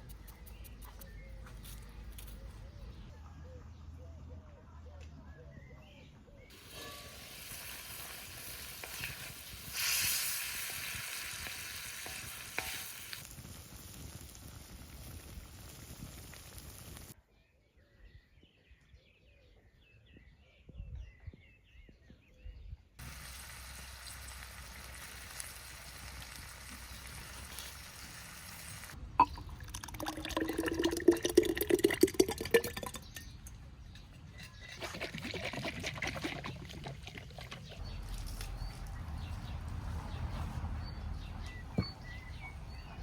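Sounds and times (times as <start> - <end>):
bird chirps: 0.0 - 7.0, 37.5 - 43.0
steady outdoor hiss: 6.5 - 17.2, 23.0 - 34.0
liquid pouring into a vessel: 29.2 - 33.4, 34.6 - 37.8.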